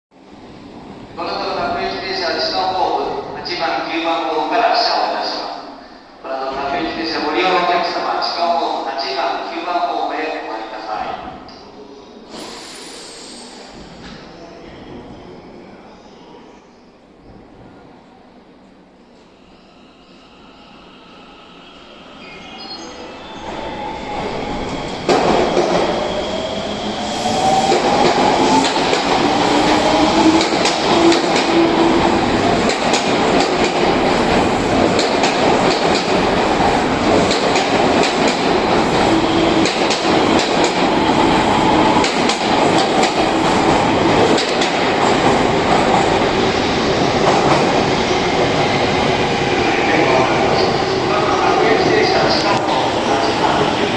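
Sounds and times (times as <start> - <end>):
train cars rumbling: 23.4 - 53.9
clatter of train wheels: 32.6 - 38.5, 39.6 - 40.9.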